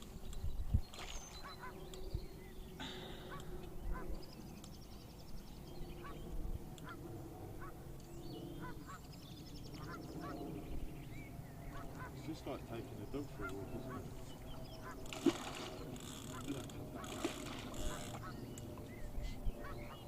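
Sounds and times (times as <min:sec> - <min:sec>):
low rumble of wind: 0:00.0 - 0:20.0
small birds trilling: 0:00.0 - 0:20.0
geese honking: 0:11.7 - 0:18.4
water rumbling: 0:11.8 - 0:19.0.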